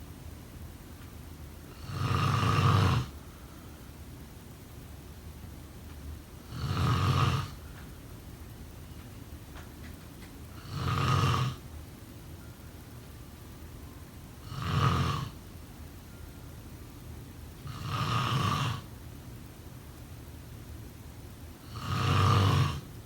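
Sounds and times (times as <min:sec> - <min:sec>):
person snoring: 0:01.7 - 0:03.2, 0:06.4 - 0:07.6, 0:10.6 - 0:11.6, 0:14.4 - 0:15.4, 0:17.6 - 0:18.9, 0:21.7 - 0:22.9.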